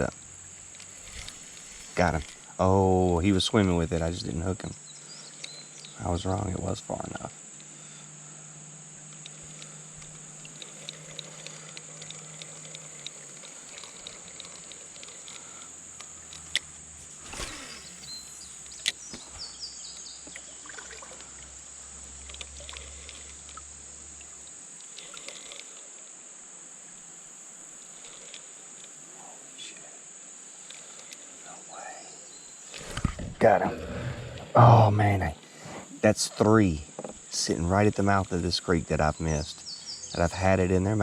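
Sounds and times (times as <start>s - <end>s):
insects droning: 0.0s - 41.0s
small clicks: 5.3s - 6.0s, 9.1s - 20.4s, 22.2s - 25.9s, 28.0s - 29.0s
trickling water: 9.1s - 19.0s, 20.0s - 25.9s.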